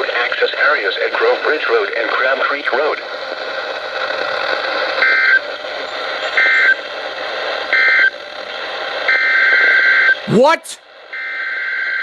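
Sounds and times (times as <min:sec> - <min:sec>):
radio hiss: 0:00.0 - 0:07.7.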